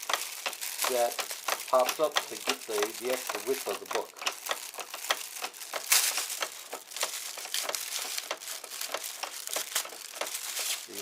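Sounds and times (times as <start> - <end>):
packaging crinkling and rustling: 0.0 - 11.0
small clicks and knocks: 0.0 - 11.0.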